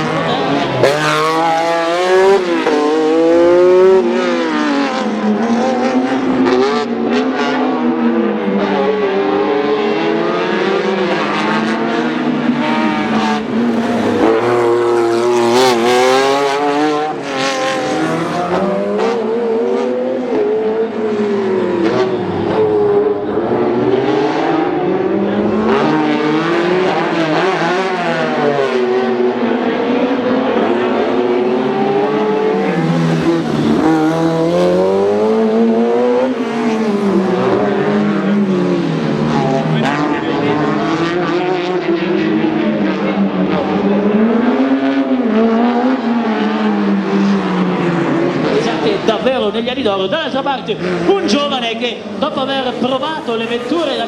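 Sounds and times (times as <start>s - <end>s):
rally car engine revving hard: 0.0s - 49.8s.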